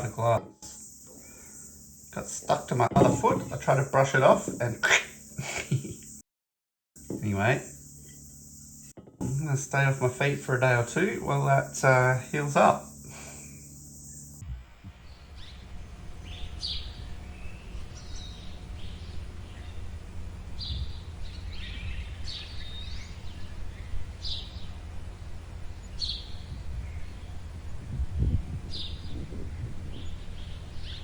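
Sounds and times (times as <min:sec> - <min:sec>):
birds chirping: 0:00.0 - 0:06.2, 0:07.0 - 0:31.0
steady low rumble: 0:14.4 - 0:31.0.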